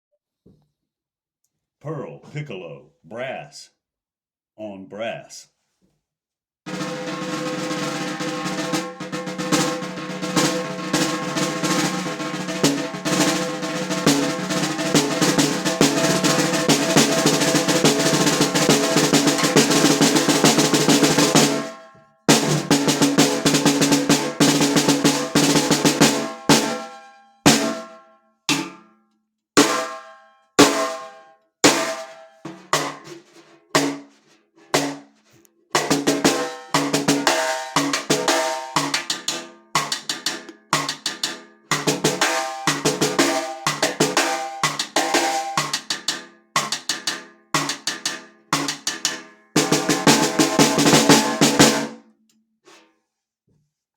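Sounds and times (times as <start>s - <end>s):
snare drum hits with metallic ring: 6.7s - 28.8s, 29.6s - 33.0s, 36.0s - 51.9s.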